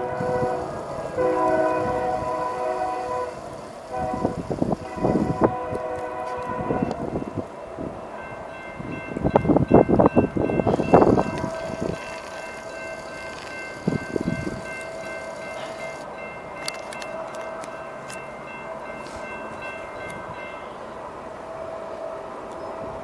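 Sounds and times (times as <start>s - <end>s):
train horn: 0.0s - 7.9s, 10.6s - 19.7s, 20.3s - 23.0s
wind gusts on microphone: 0.0s - 16.1s.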